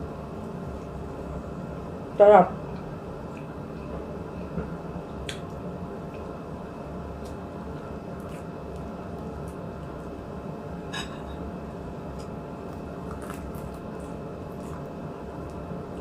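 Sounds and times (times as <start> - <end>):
low background hum: 0.0 - 16.0
wet chewing and mouth sounds: 7.2 - 10.2, 12.1 - 16.0.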